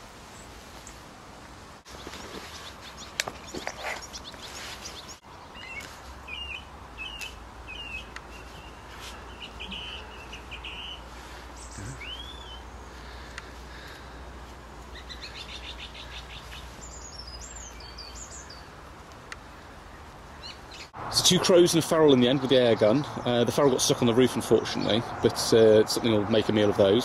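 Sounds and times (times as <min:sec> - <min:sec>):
outdoor background noise: 0:00.0 - 0:27.0
small birds chirping: 0:01.9 - 0:25.2
whistled bird call: 0:11.7 - 0:12.6.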